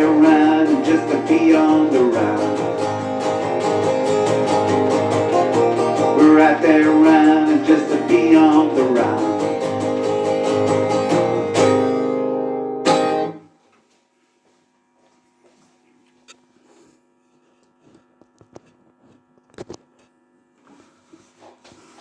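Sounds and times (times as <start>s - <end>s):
acoustic guitar strumming: 0.0s - 13.6s.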